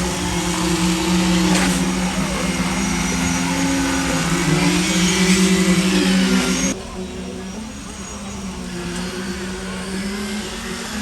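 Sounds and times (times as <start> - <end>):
machinery engine running: 0.0 - 6.8.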